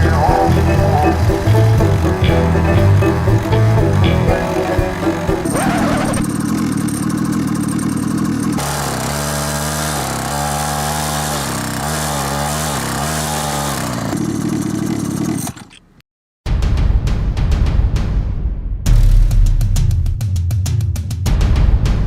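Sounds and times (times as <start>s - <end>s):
motorbike engine running: 0.0s - 15.6s.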